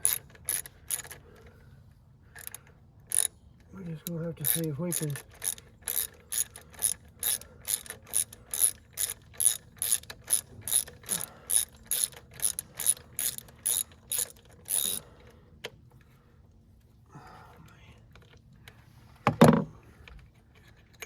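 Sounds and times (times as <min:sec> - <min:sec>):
ratchet wrench clicking: 0:00.0 - 0:01.2, 0:02.4 - 0:03.3, 0:03.9 - 0:15.0.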